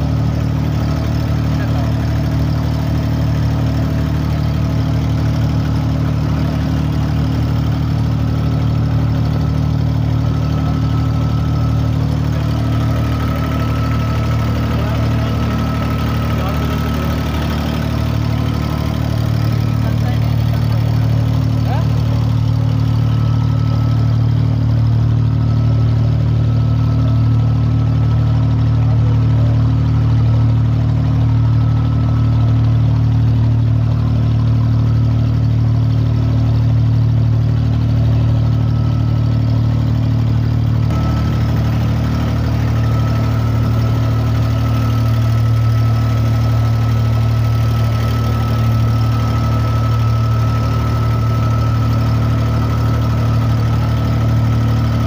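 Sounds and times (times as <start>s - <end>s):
boat engine droning: 0.0s - 55.0s.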